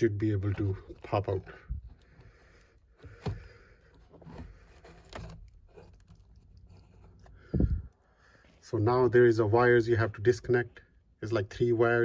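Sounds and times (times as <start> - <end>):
plastic clicks and scrapes: 0.4 - 7.4.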